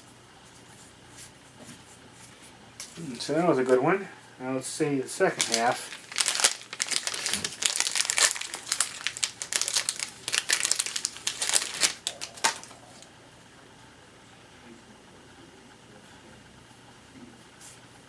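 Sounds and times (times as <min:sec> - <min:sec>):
wrapper crinkling and rustling: 0:05.2 - 0:13.0.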